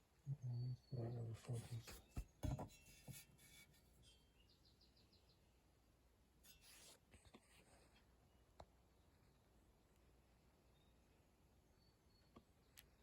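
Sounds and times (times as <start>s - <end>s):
knock: 2.2s - 3.2s.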